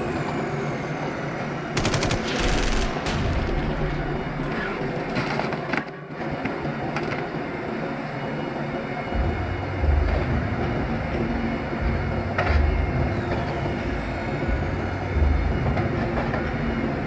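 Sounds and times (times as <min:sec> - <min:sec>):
heavy machinery clattering: 0:01.8 - 0:05.9.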